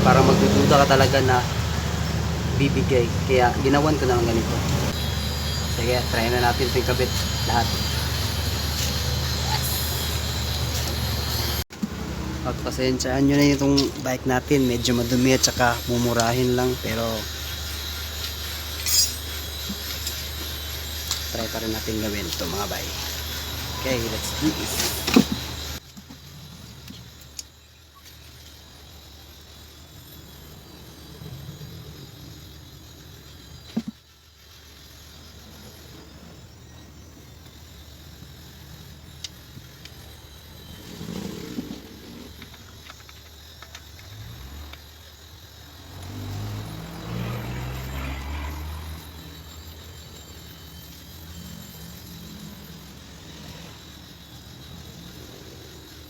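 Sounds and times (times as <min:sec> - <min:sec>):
vehicle passing: 0:00.0 - 0:09.4, 0:44.2 - 0:50.1
bike parts and tools clicking: 0:12.9 - 0:28.7, 0:37.4 - 0:53.5.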